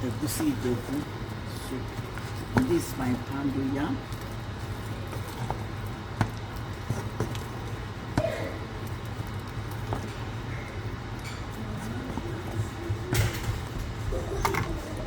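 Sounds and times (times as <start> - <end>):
steady low hum: 0.0 - 15.0
items knocking and clicking: 13.1 - 14.9.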